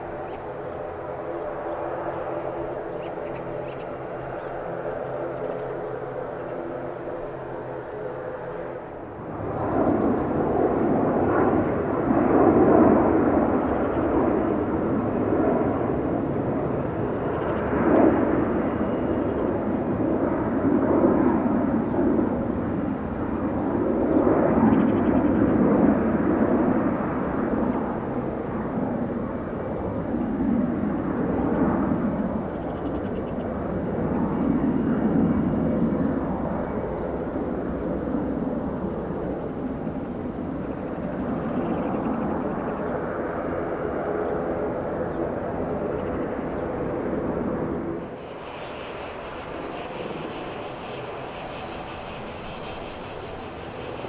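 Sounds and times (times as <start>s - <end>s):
jet engines rumbling: 47.6s - 54.0s.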